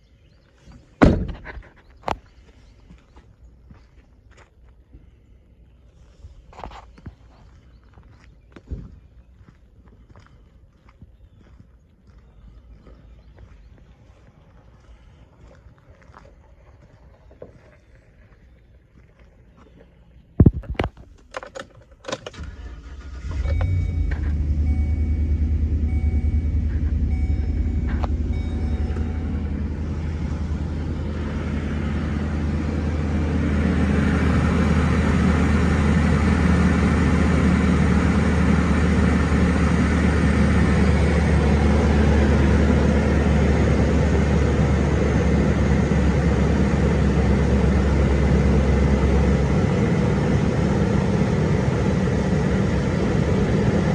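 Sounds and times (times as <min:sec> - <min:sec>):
van engine starting and idling: 0:01.0 - 0:02.1, 0:21.8 - 0:53.9.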